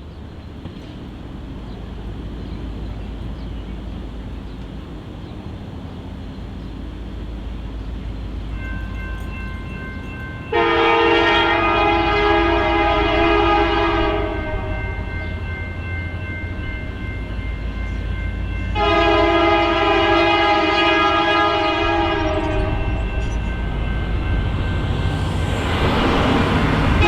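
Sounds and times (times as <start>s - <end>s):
locomotive low rumble: 0.0s - 27.0s
locomotive air horn chord: 10.4s - 16.9s, 18.6s - 27.0s.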